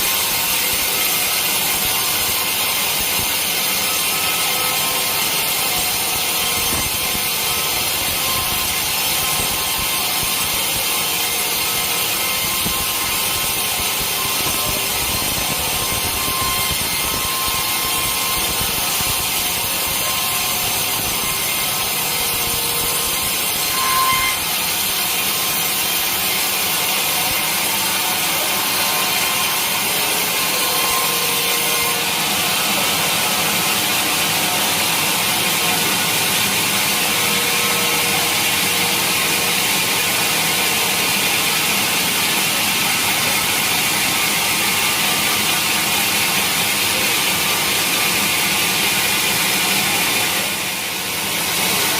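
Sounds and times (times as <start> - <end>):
saw cutting through log: 0.0 - 51.9
short saw squeal: 11.2 - 34.8.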